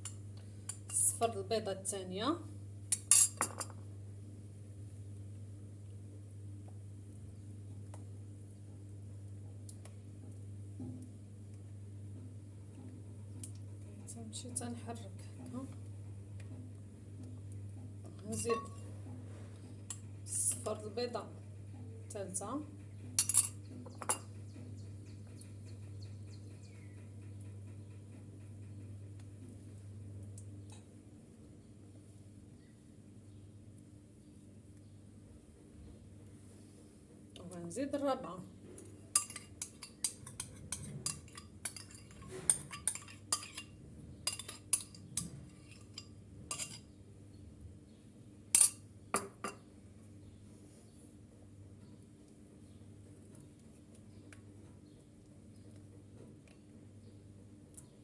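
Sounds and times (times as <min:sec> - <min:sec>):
utensil clinking in bowl: 0:18.2 - 0:18.9, 0:39.1 - 0:43.7, 0:44.3 - 0:46.8.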